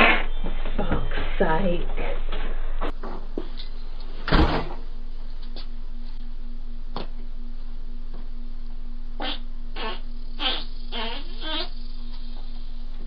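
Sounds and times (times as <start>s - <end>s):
fart: 0.0s - 0.3s, 9.2s - 12.6s
low electrical hum: 0.0s - 13.0s.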